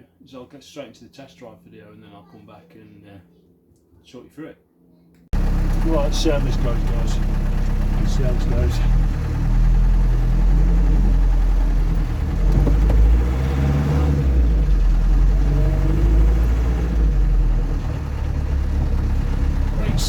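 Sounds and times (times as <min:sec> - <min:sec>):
car engine accelerating: 0:05.4 - 0:20.0.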